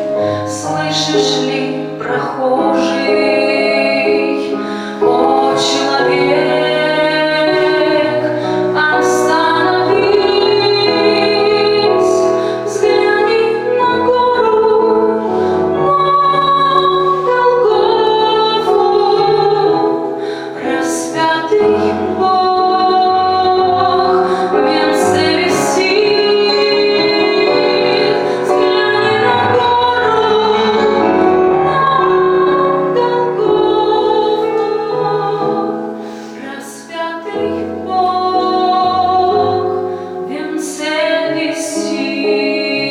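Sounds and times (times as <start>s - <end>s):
instrumental accompaniment: 0.0s - 42.9s
woman singing: 0.0s - 42.9s.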